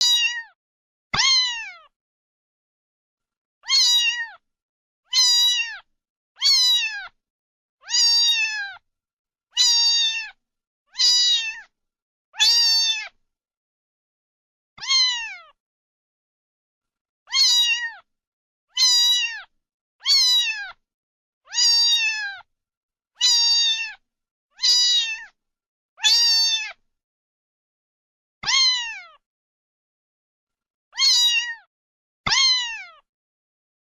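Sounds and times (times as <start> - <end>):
kitten meowing: 0.0 - 0.6, 1.2 - 1.9, 3.6 - 4.4, 5.1 - 5.8, 6.4 - 7.2, 7.8 - 8.8, 9.6 - 11.7, 12.4 - 13.2, 14.8 - 15.6, 17.3 - 18.1, 18.7 - 20.8, 21.5 - 22.4, 23.2 - 24.0, 24.6 - 25.4, 26.0 - 26.8, 28.4 - 29.2, 31.0 - 31.7, 32.3 - 33.0.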